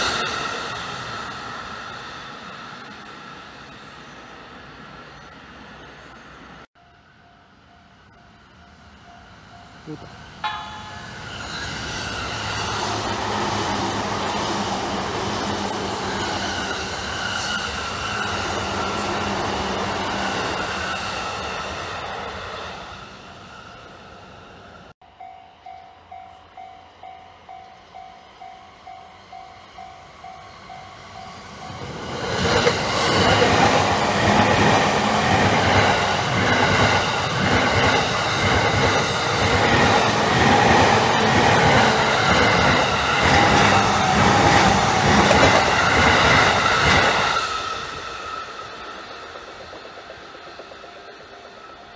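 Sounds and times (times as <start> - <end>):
electric train running loudly: 0.0 - 51.9
passing train: 0.0 - 51.9
level-crossing warning bell: 3.0 - 12.4, 25.0 - 32.1.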